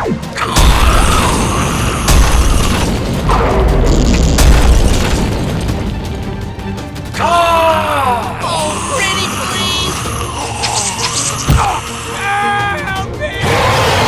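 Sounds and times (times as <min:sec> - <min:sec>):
background music: 0:00.0 - 0:14.0
deep booming explosion: 0:00.6 - 0:06.5.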